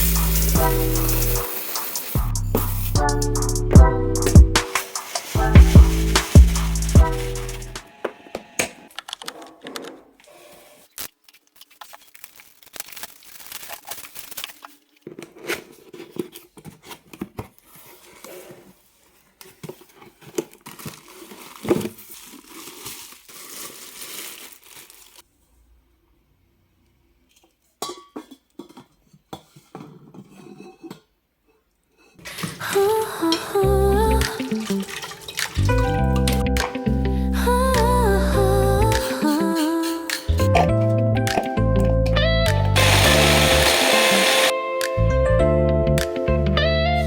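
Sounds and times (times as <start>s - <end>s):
plastic packaging crinkling: 4.6s - 7.8s, 10.8s - 25.3s, 34.3s - 35.7s.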